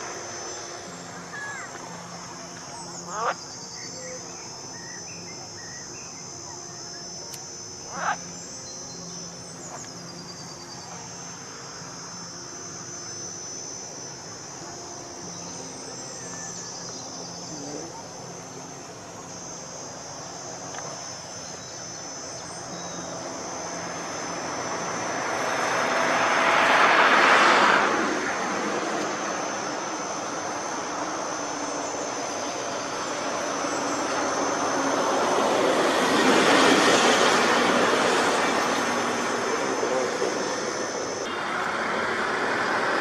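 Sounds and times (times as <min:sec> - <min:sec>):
insects chirring: 0:00.0 - 0:43.0
faint low engine hum: 0:13.9 - 0:43.0
vehicle passing close: 0:22.6 - 0:43.0.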